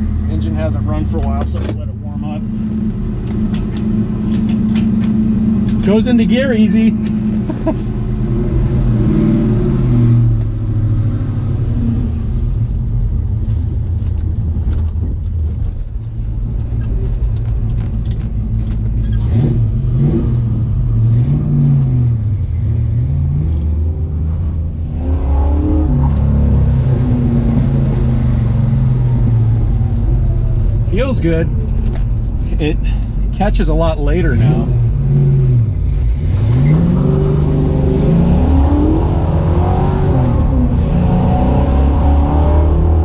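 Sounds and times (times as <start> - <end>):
car engine accelerating through gears: 0.0 - 43.0.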